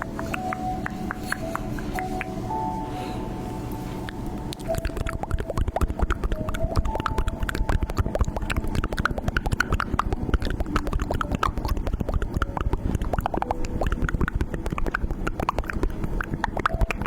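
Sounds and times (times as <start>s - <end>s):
slime squishing wet clicks: 4.5s - 17.0s.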